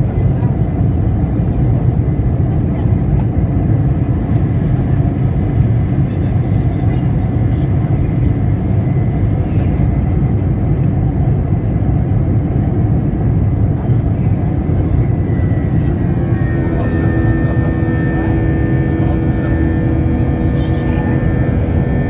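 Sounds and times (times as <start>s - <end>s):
airliner deep rumble: 0.0s - 22.0s
whining engine tones: 15.0s - 22.0s.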